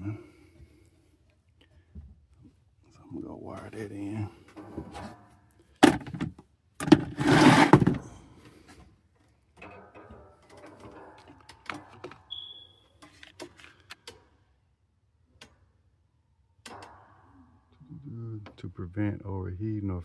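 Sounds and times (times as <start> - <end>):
rustling scrape: 6.9 - 8.2
short high beep: 12.3 - 12.8.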